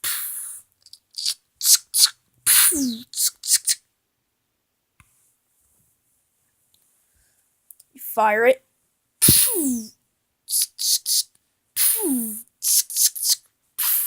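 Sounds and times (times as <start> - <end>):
child making mouth gunshot sounds: 0.0 - 0.6, 2.5 - 3.8, 9.2 - 9.9, 10.5 - 14.0.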